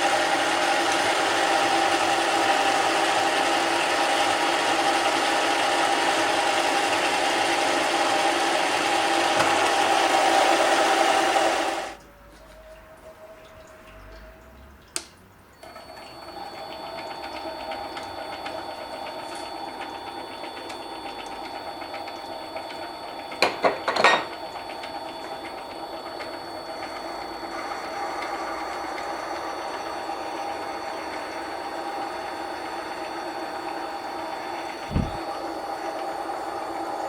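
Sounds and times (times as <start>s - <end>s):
loud sharp knocks: 34.9s - 35.2s.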